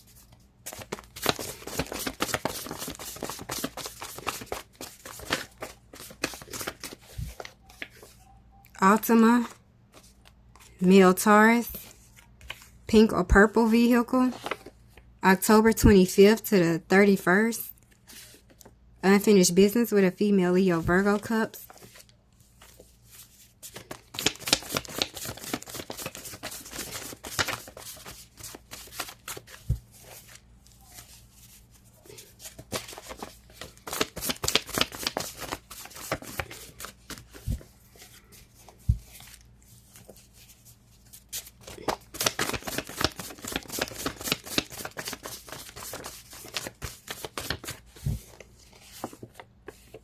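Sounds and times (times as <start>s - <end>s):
cards being shuffled: 0.2s - 8.1s, 21.7s - 31.6s, 32.4s - 50.0s.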